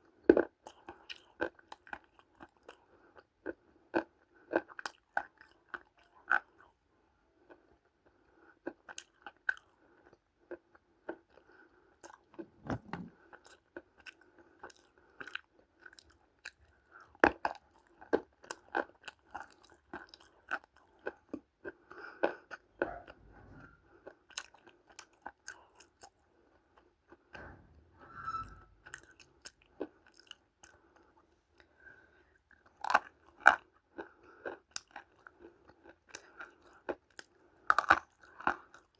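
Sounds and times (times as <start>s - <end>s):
clay chunks crunching while chewed: 32.6s - 38.9s.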